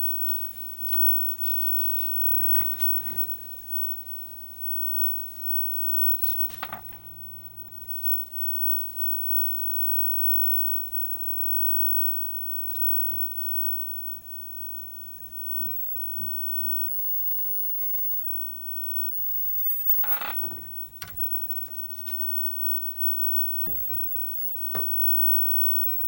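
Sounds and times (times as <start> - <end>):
steady electrical hum: 0.0 - 26.0.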